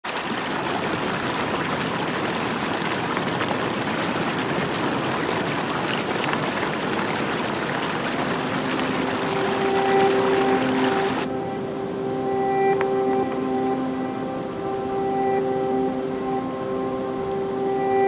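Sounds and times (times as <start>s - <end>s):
flowing water rushing: 0.0s - 18.0s
sustained music notes: 8.1s - 18.0s.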